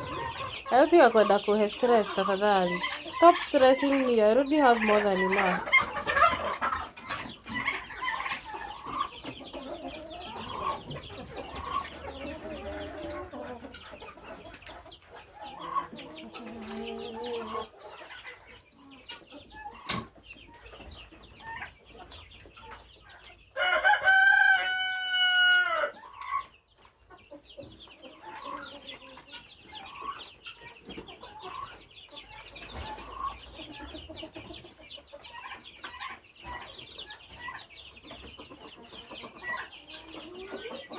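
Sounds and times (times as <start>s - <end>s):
chickens clucking: 0.0s - 40.9s
chicks peeping: 0.0s - 40.9s
rooster crowing: 23.6s - 26.0s.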